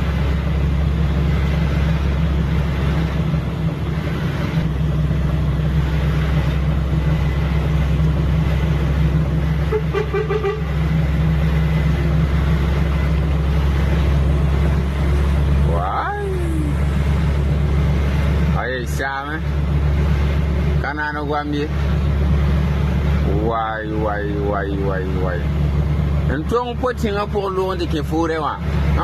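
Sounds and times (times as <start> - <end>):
heavy vehicle engines droning: 0.0 - 29.0
horn tooting: 9.6 - 10.9.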